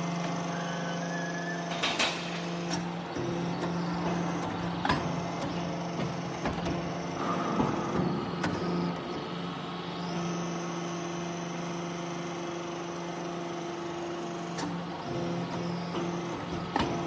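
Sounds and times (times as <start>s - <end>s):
high-pitched whine: 0.0s - 2.4s
hydraulic press hum: 0.0s - 17.0s.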